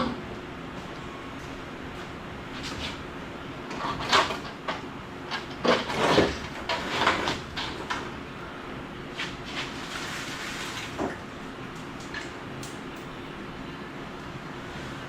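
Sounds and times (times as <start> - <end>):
metal parts clunking and scraping: 3.7 - 8.1.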